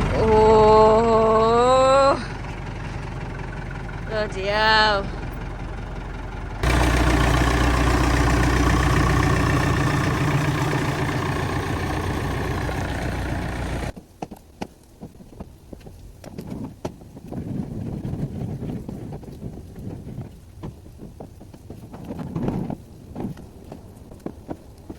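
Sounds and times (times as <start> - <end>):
tractor diesel engine running: 0.0 - 14.0
faint wind: 0.0 - 24.9.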